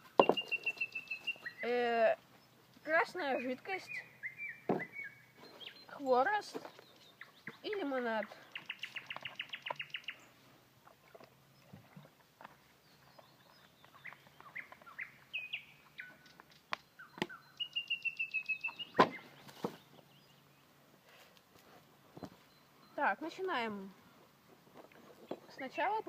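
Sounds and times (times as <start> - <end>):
small birds singing: 0.0 - 20.9, 21.9 - 24.2.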